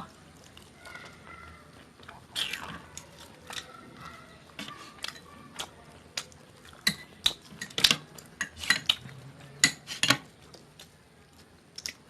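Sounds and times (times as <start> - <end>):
utensil clinking on a plate: 6.8 - 10.3.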